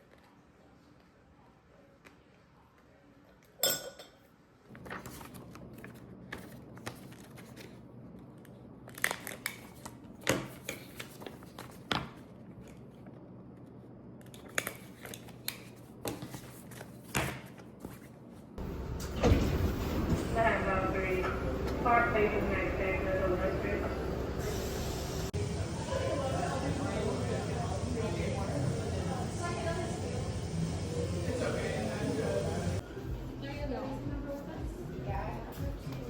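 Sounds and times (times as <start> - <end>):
steady low hum: 18.3 - 36.0.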